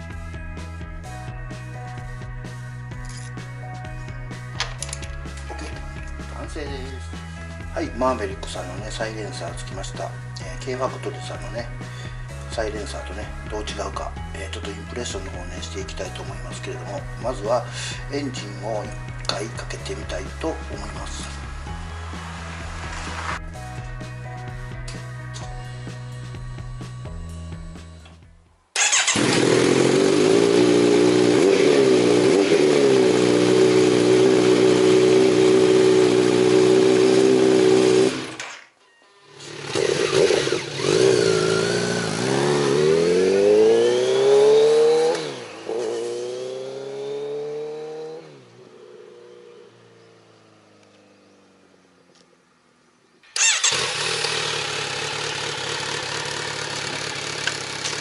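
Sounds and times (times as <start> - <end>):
motorcycle engine running: 28.8 - 38.4, 39.3 - 48.8, 53.4 - 58.0
motorcycle accelerating hard: 28.8 - 38.5, 39.3 - 51.7, 53.4 - 58.0.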